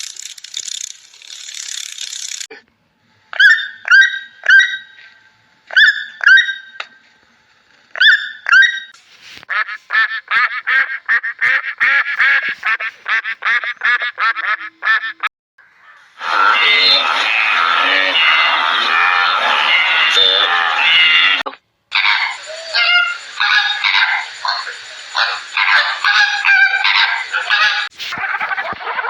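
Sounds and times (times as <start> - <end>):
bird honking: 19.4 - 27.9.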